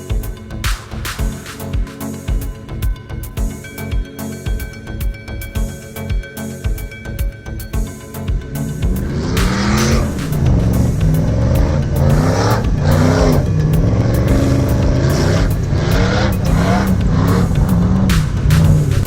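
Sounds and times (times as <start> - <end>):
car engine revving: 8.4 - 19.0.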